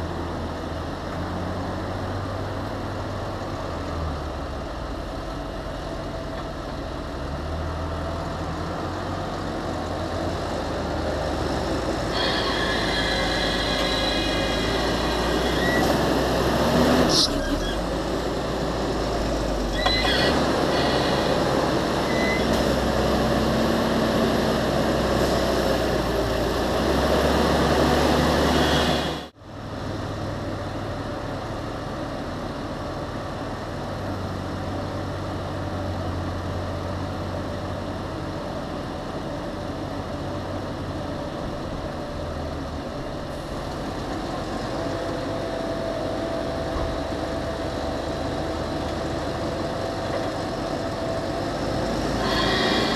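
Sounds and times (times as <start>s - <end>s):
tractor diesel engine working: 0.0s - 52.9s.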